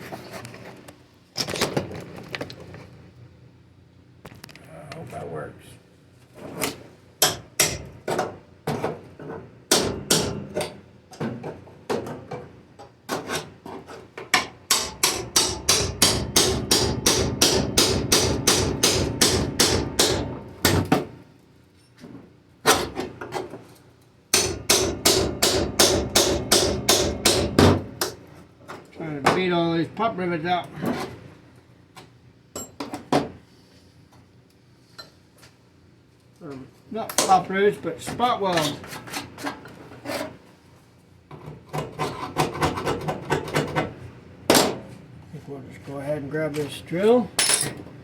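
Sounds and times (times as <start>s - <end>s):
hammer striking metal panel: 14.7s - 21.1s, 24.4s - 27.8s.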